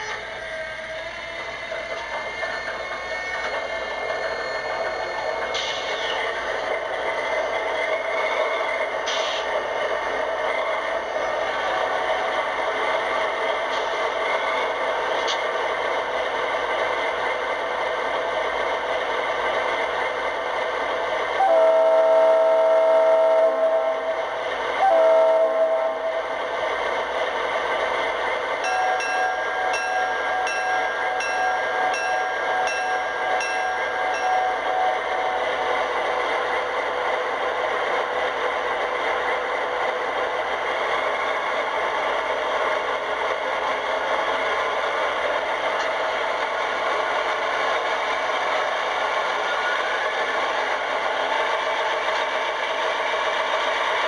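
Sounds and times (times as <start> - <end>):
locomotive horn blasts: 21.4 - 24.2, 24.8 - 26.2
bell ringing: 28.6 - 36.0.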